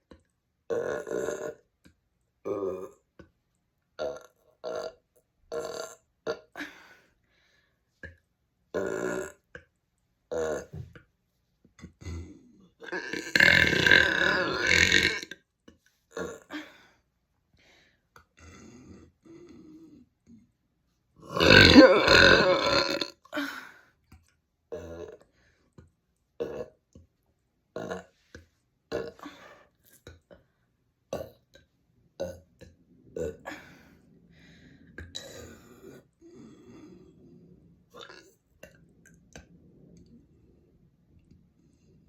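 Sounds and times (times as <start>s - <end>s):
person burping: 0.7s - 1.6s, 2.4s - 3.1s, 4.0s - 6.7s, 8.7s - 9.4s, 10.3s - 10.8s, 12.8s - 15.4s, 16.2s - 16.7s, 21.2s - 23.5s, 26.4s - 26.8s, 28.9s - 29.4s, 31.1s - 31.4s, 35.0s - 36.0s, 38.0s - 38.8s.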